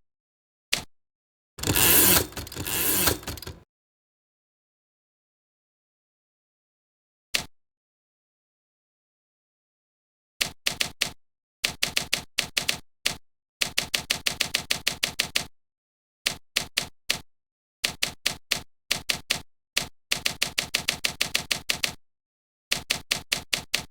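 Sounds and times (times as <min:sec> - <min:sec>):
rapid sharp mechanical clicks: 0:01.6 - 0:03.6.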